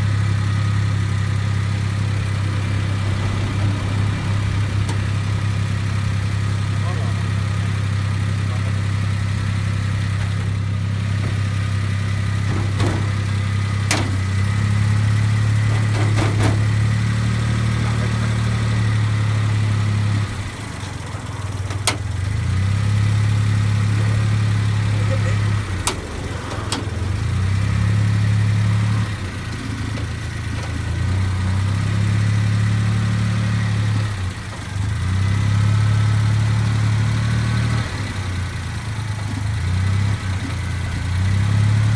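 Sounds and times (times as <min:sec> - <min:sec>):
car engine idling: 0:00.0 - 0:41.9.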